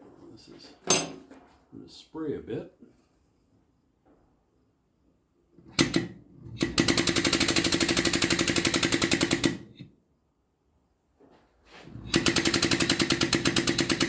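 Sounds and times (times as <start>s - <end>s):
air motor pump chattering: 5.7s - 9.8s, 11.9s - 14.0s.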